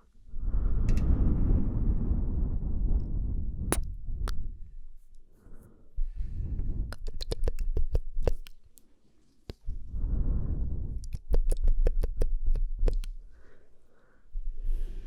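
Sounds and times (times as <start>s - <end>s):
breathy air: 5.3s - 6.9s, 9.8s - 11.0s, 13.2s - 15.0s
wet lip and tongue clicks: 6.9s - 8.9s, 11.0s - 13.2s.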